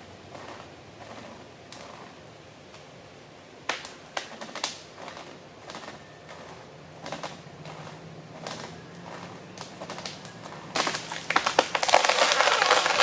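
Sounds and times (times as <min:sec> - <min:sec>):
wood cracking in sharp snaps: 0:03.7 - 0:05.8.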